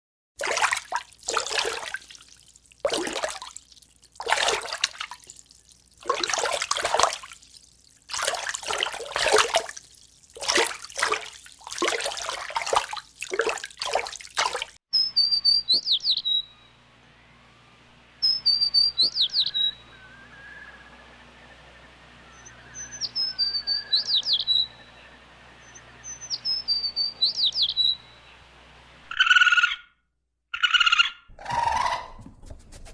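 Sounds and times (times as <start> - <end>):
water splashing and sloshing: 0.4 - 14.8, 17.8 - 29.1
songbird trilling: 14.9 - 29.2.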